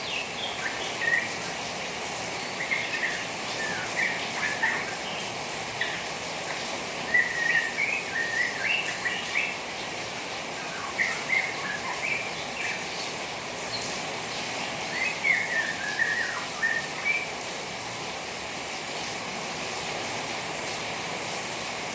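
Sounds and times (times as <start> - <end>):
bird twittering: 0.0 - 14.0, 14.8 - 17.3
rain hiss: 0.0 - 21.9.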